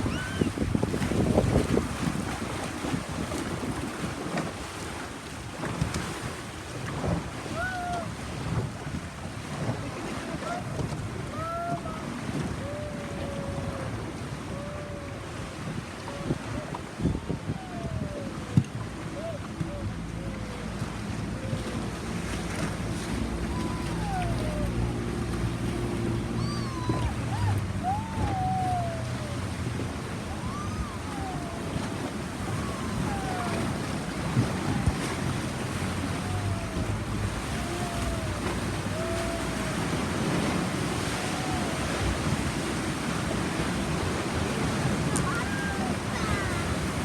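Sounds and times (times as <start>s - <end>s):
boat engine running low: 0.0s - 47.0s
waves: 0.0s - 47.0s
wind: 0.0s - 47.0s
birds calling: 26.0s - 29.3s.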